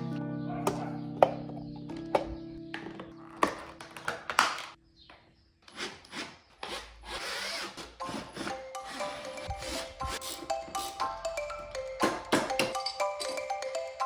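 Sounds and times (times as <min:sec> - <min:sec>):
background music: 0:00.0 - 0:04.7, 0:07.4 - 0:14.0
tool scraping and rubbing: 0:05.7 - 0:11.1.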